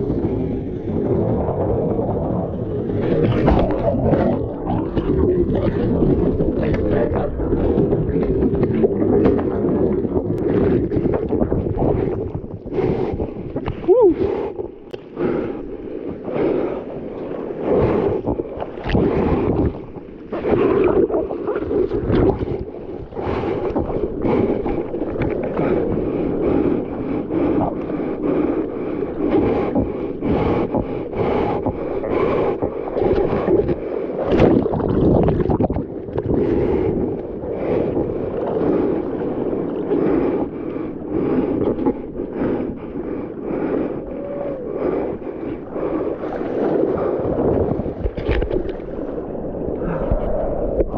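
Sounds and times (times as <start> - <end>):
wind buffeting microphone: 0.0 - 15.6
sea water sloshing and splashing: 0.0 - 50.9.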